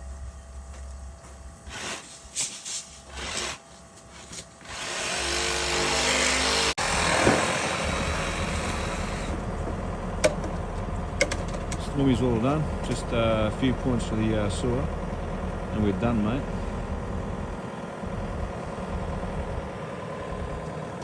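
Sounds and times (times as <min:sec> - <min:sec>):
excavator engine running: 0:03.0 - 0:21.0
brief machine whine: 0:06.4 - 0:09.5
excavator scraping knocks: 0:07.0 - 0:12.0.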